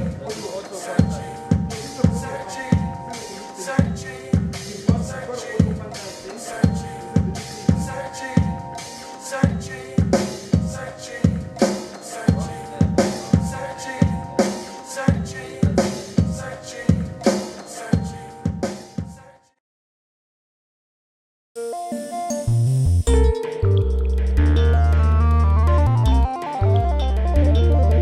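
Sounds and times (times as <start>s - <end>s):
drum machine beat: 0.0s - 19.1s, 23.1s - 27.9s
held synth chords: 21.6s - 28.0s.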